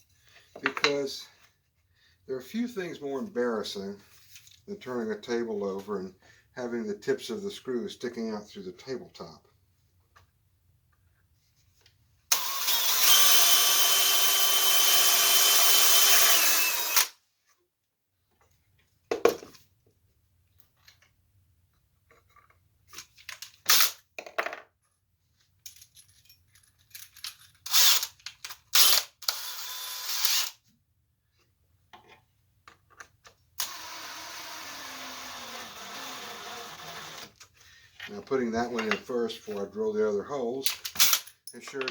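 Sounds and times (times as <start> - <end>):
knocks and clicks of handling tools: 0.4 - 1.0, 18.3 - 19.6, 37.4 - 39.1, 40.7 - 41.9
electric drill boring wood: 12.3 - 17.2, 28.8 - 30.6, 33.6 - 37.4.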